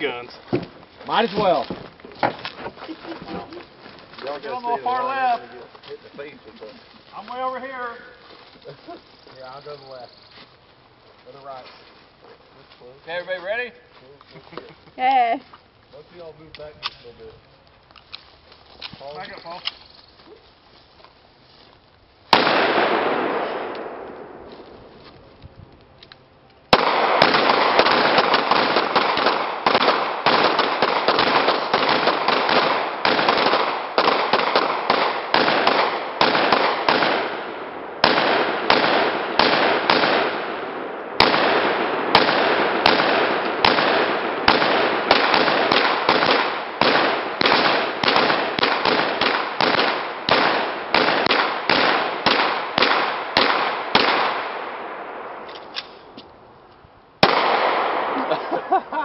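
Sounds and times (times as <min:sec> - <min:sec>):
gunshots: 0:22.3 - 0:24.5, 0:26.7 - 0:55.9, 0:57.2 - 0:58.8.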